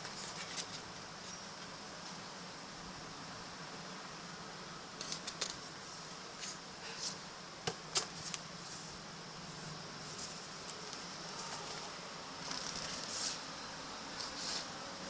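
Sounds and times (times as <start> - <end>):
book and packaging rustling: 0.0 - 1.4, 9.5 - 13.4
steady low hum: 0.0 - 15.0.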